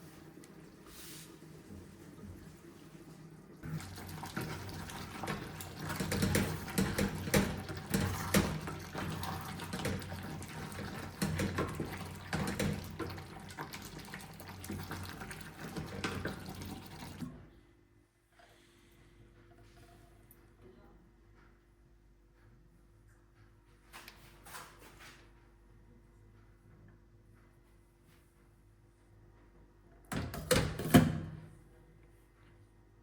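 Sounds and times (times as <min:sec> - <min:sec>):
tap water running into sink: 0:00.0 - 0:17.4.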